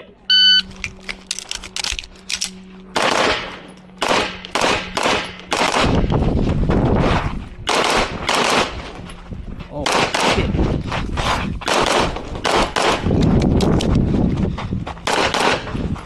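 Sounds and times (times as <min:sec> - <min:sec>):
pistol shots: 0:03.0 - 0:06.1, 0:07.7 - 0:08.8, 0:09.8 - 0:10.5, 0:11.6 - 0:13.2, 0:15.0 - 0:15.7.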